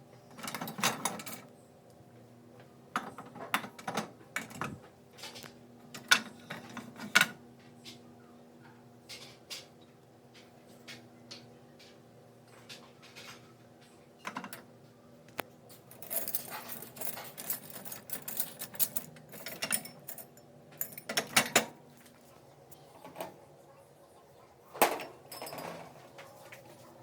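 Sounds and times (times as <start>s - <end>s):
clicking and rattling clatter: 15.8s - 21.8s.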